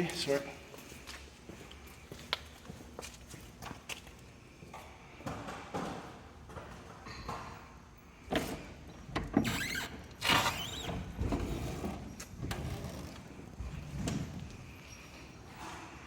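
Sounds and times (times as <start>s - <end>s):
boat drive clunks and creaks: 8.3s - 15.0s.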